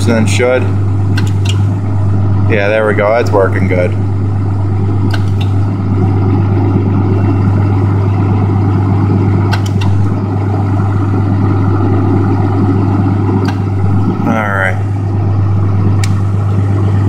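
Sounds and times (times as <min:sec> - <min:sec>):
diesel engine idling: 0:00.0 - 0:17.0.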